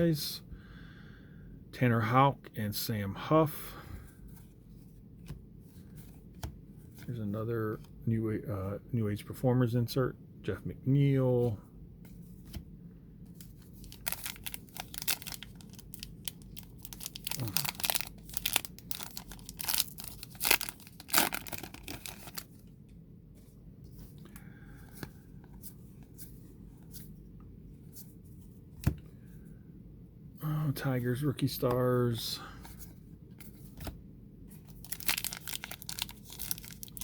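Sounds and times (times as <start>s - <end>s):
faint handling of cards: 3.7s - 8.2s, 11.0s - 29.6s, 30.8s - 37.0s
wrapper tearing and crinkling: 13.8s - 22.5s, 34.8s - 37.0s.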